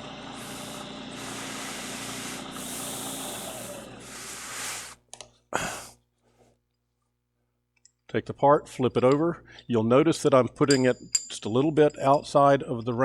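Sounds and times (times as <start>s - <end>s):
milling machine cutting metal: 0.0s - 4.3s.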